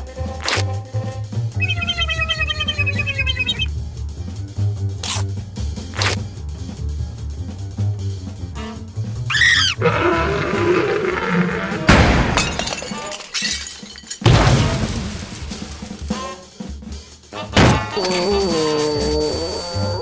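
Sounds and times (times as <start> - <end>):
crashes with shattering: 11.8 - 16.3.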